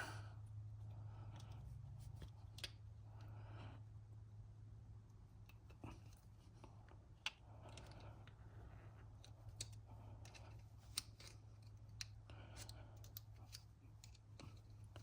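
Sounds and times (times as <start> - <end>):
low steady hum: 0.0 - 15.0
metal pick clicking and scraping: 9.0 - 15.0.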